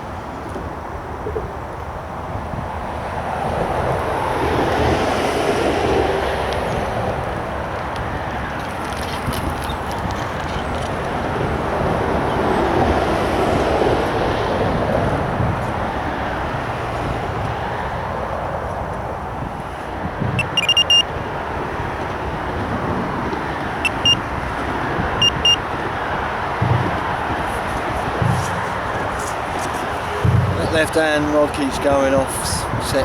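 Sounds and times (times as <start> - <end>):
road traffic noise: 0.0 - 33.0
electronic bite alarm bleeping: 20.3 - 21.1, 23.8 - 24.3, 25.2 - 25.6.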